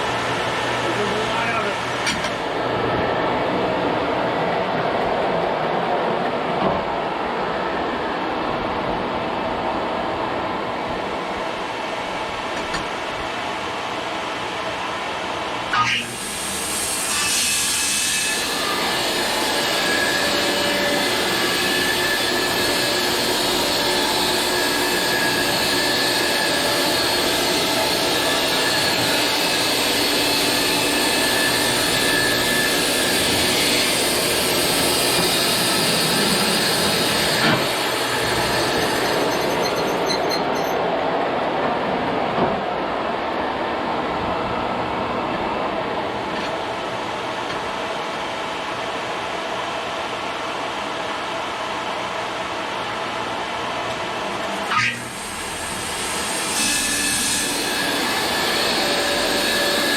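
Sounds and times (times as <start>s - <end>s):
saw blade hiss cutting log: 15.8s - 40.5s, 54.7s - 59.9s
bandsaw mill running: 15.8s - 40.8s, 54.7s - 59.9s.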